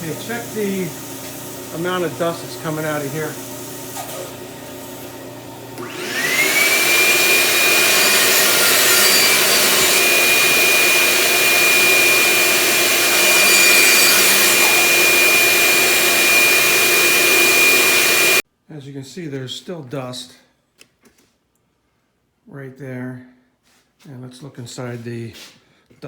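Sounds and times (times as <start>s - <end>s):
shop vacuum motor whine: 0.0s - 18.4s.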